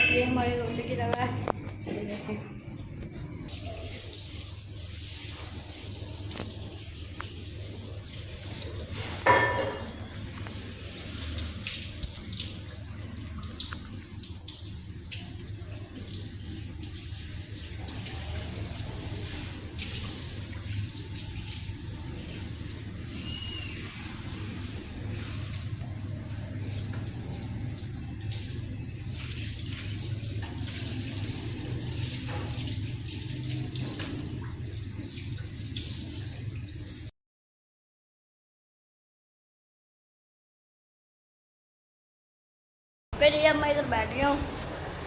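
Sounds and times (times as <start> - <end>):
tap water running into sink: 3.5 - 37.1.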